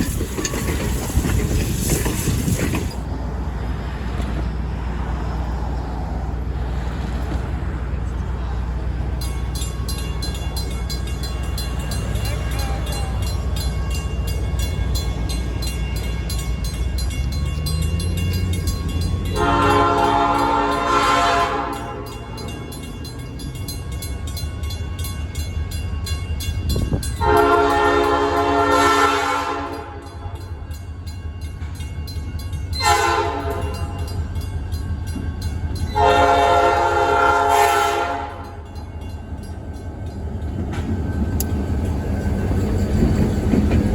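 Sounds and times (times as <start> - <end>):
locomotive engine rumble: 0.0 - 43.9
locomotive horn blasts: 19.3 - 22.3, 27.1 - 30.6, 32.8 - 34.2, 35.9 - 38.7.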